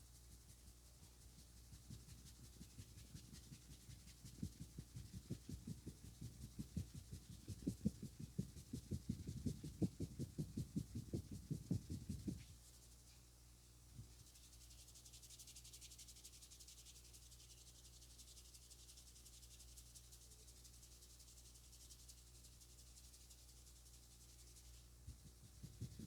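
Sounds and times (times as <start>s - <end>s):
head massage thumps: 1.7s - 12.4s, 25.1s - 26.0s.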